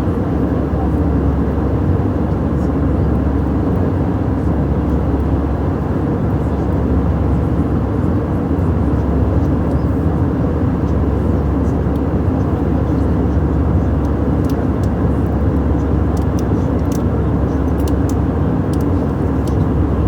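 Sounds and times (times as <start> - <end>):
jet engine and airflow hum: 0.0 - 20.0
faint clicks: 16.2 - 17.1, 17.7 - 19.7.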